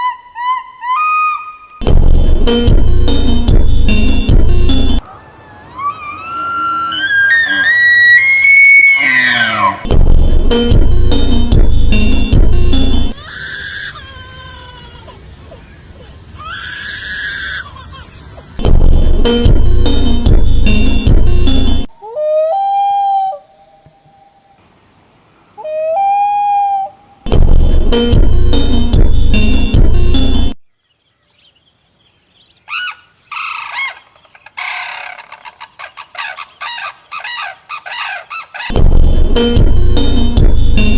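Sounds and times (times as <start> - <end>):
beat-driven music: 1.8 - 5.0, 9.8 - 13.2, 18.6 - 21.9, 27.3 - 30.6, 38.7 - 40.9
animal screaming: 5.1 - 9.9, 13.2 - 14.6, 16.4 - 18.0.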